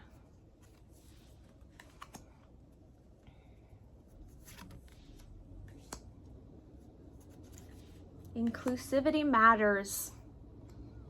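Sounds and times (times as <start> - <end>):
low room hum: 0.0 - 11.0
cards clicking and rustling: 0.6 - 2.6, 4.3 - 6.1, 7.2 - 8.8.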